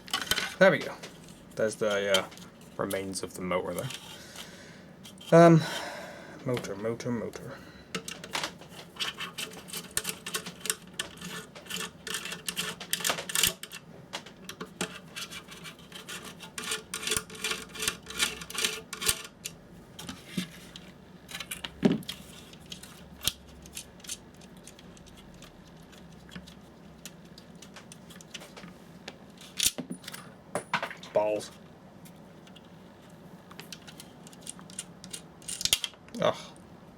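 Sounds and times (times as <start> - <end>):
plastic parts clicking and rattling: 0.0 - 4.2, 7.9 - 28.8, 33.5 - 36.0.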